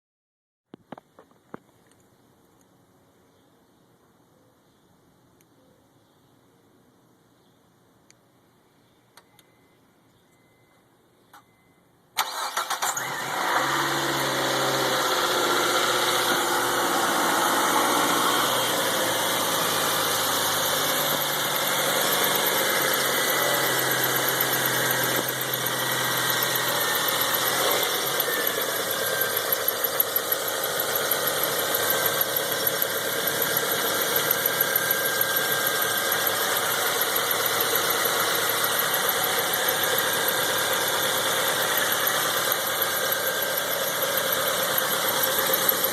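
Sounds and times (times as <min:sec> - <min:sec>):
whirring whine: 0:11.4 - 0:45.9
car engine idling: 0:12.2 - 0:45.9.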